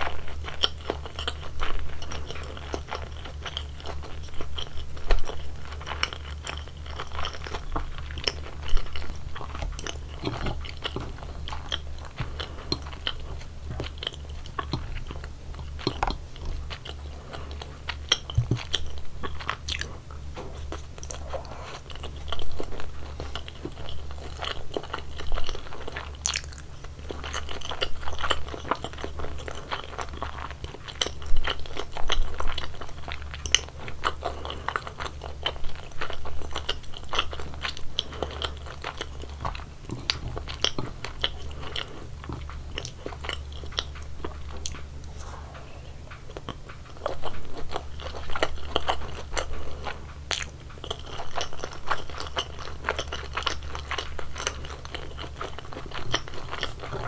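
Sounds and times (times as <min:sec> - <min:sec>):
chewing and biting food: 0:00.0 - 0:57.0.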